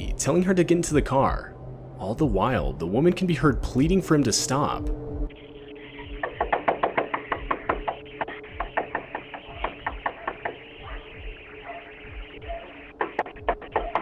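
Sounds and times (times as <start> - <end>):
low background music: 0.0 - 14.0
frantic knocking on door: 6.1 - 8.0, 8.6 - 11.3.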